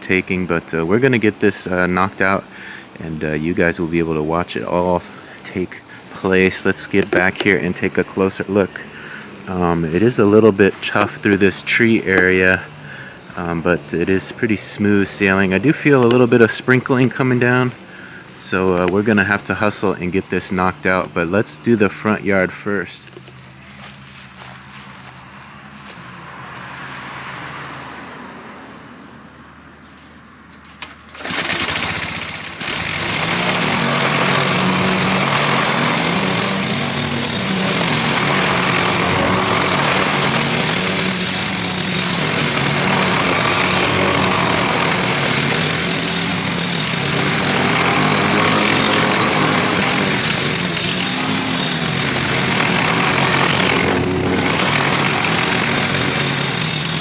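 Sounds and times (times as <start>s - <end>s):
lawn mower engine running: 0.0s - 26.0s, 30.6s - 57.0s.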